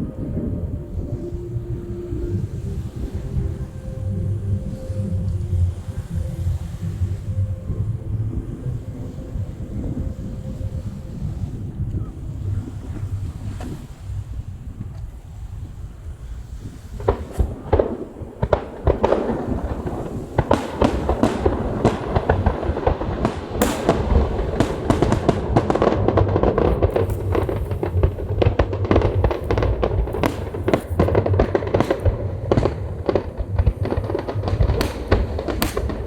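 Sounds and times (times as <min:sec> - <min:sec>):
continuous rumble: 0:00.0 - 0:36.0
fireworks bangs and crackles: 0:08.5 - 0:36.0.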